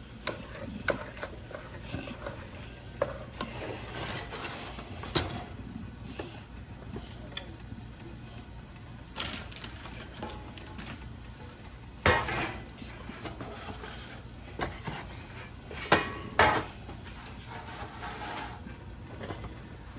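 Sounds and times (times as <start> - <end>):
utensil scraping a dish: 0.2 - 5.6, 12.0 - 19.6.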